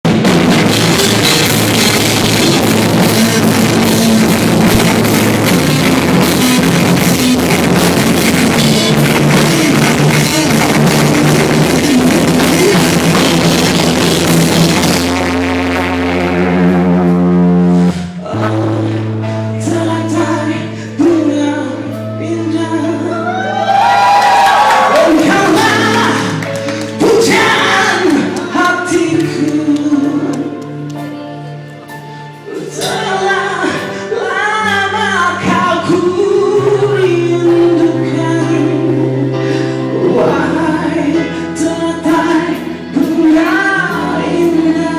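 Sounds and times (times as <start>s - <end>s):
live rock band playing: 0.0s - 44.9s
person singing: 0.8s - 44.9s.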